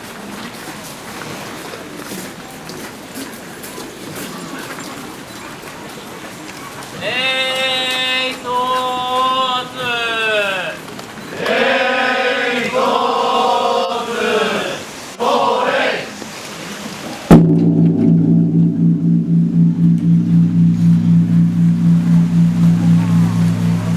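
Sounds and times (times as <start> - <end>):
temple bell struck: 17.3 - 23.9.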